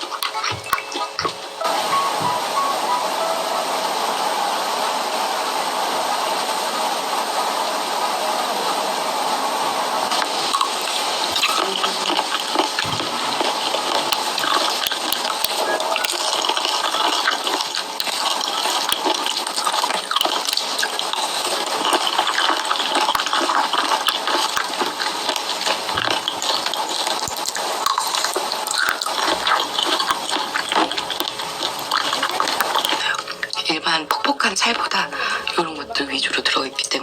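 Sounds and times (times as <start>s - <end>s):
wet chewing and smacking: 10.5s - 34.3s.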